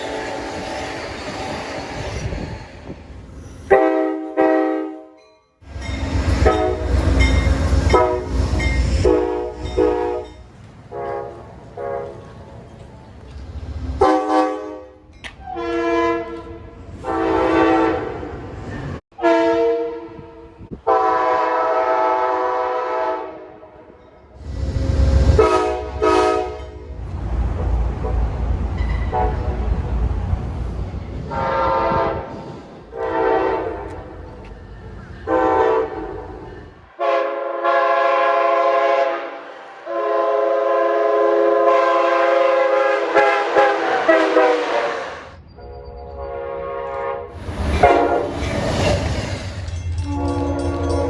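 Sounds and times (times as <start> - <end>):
passing trains rumbling: 0.0 - 51.0
locomotive air horn blasts: 3.7 - 5.2, 6.1 - 12.3, 14.0 - 18.3, 19.2 - 24.0, 24.6 - 27.0, 29.0 - 29.8, 31.3 - 34.0, 35.2 - 36.3, 36.9 - 48.4, 50.0 - 51.0.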